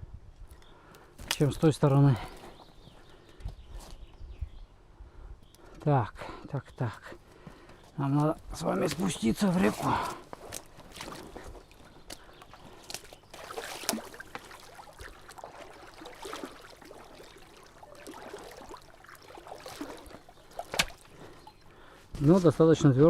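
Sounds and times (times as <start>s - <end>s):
water sloshing around legs: 8.2s - 22.6s.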